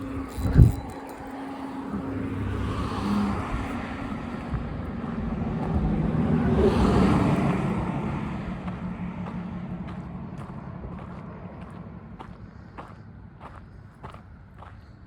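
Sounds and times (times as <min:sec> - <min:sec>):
road vehicle passing by: 0:00.0 - 0:15.0.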